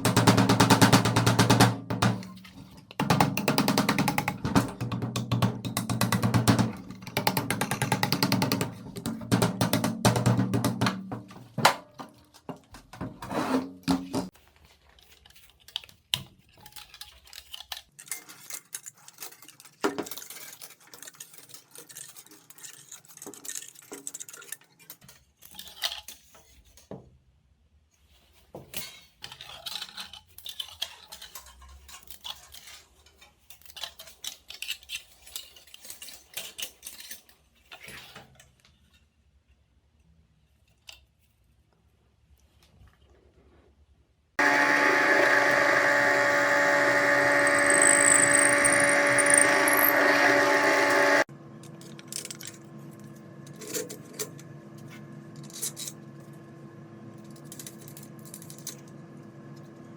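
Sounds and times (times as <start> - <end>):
small metallic clicks and clinks: 47.5 - 50.0.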